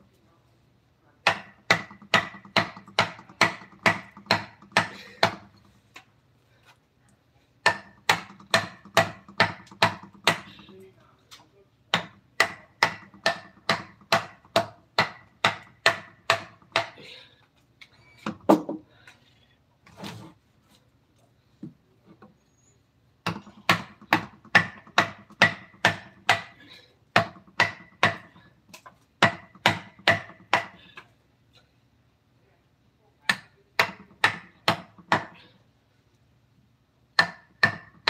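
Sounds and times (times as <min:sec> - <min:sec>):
mallet striking chisel: 0:01.2 - 0:05.5, 0:07.6 - 0:10.7, 0:11.9 - 0:17.0, 0:23.2 - 0:26.6, 0:27.2 - 0:28.4, 0:29.2 - 0:30.8, 0:33.3 - 0:35.3, 0:37.2 - 0:38.0.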